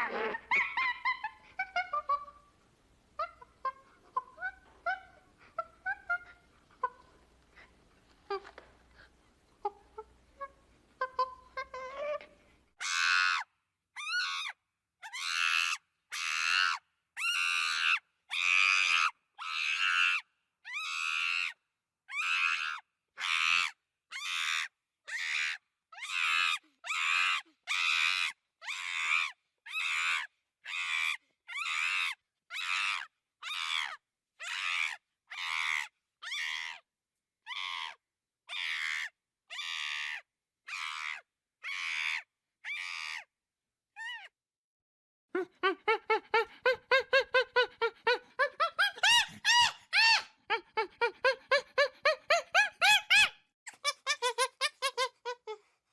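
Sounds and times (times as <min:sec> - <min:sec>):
monkey high-pitched calls: 0:00.0 - 0:02.5, 0:10.0 - 0:13.4, 0:14.0 - 0:36.8, 0:37.5 - 0:43.3, 0:45.6 - 0:55.6.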